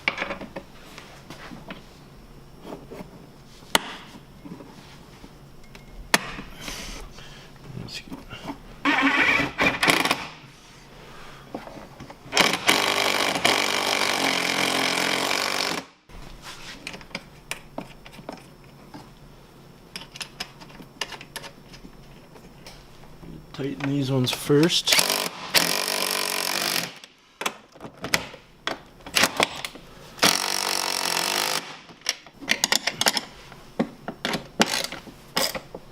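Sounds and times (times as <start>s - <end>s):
handheld power tool running: 12.3s - 16.0s, 24.9s - 27.1s, 30.2s - 31.8s.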